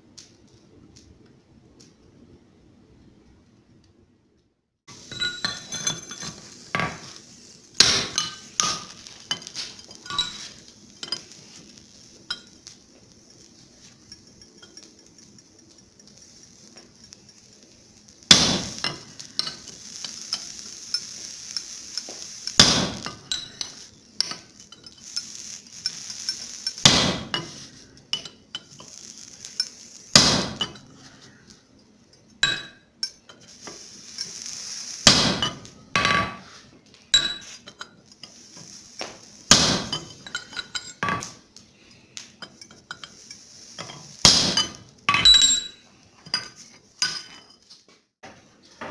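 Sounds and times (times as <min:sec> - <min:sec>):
steady hiss: 0:04.9 - 0:48.9
metallic tool clinks: 0:44.6 - 0:47.6.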